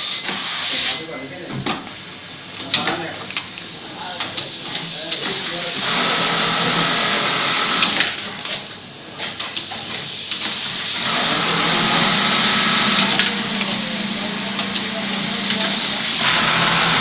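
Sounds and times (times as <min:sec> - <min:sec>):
sewing machine running: 0:05.8 - 0:08.1, 0:10.6 - 0:17.0.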